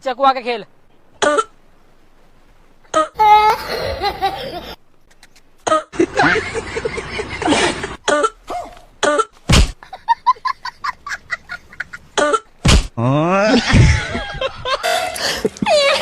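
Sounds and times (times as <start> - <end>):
person coughing: 7.4 - 9.2.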